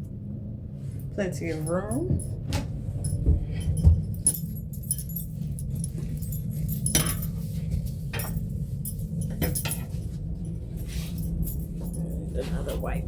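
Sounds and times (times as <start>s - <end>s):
steady low hum: 0.0s - 13.0s
light clinks of small objects: 3.0s - 13.0s.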